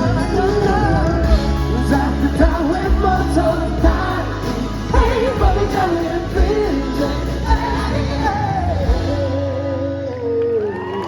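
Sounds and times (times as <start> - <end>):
drums: 0.0 - 10.2
bass guitar: 0.0 - 11.0
person singing: 0.0 - 11.0.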